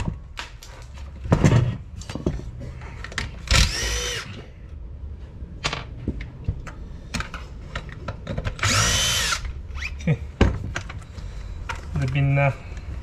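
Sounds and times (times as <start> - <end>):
cordless drill whine: 3.5 - 4.4, 8.6 - 9.9
tools clicking and knocking: 5.7 - 9.5.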